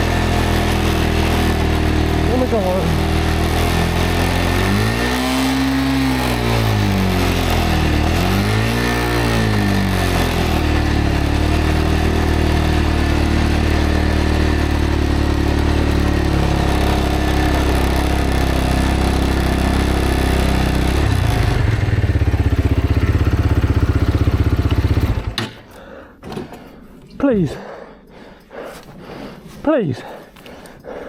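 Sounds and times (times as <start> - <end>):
motorcycle engine running: 0.0 - 25.6.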